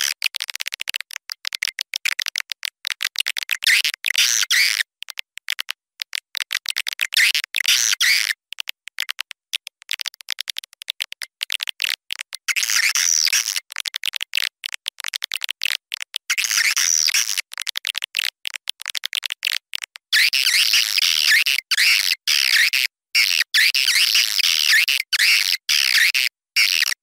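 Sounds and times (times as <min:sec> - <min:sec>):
rapid dry clicking: 0:00.1 - 0:04.2, 0:04.8 - 0:07.7, 0:08.3 - 0:20.1.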